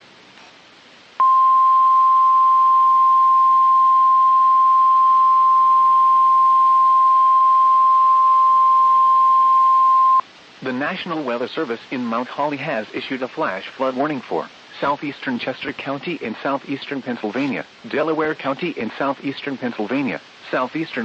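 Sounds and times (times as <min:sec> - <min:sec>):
faint radio hiss: 0:00.0 - 0:21.0
loud steady alarm tone: 0:01.2 - 0:10.2.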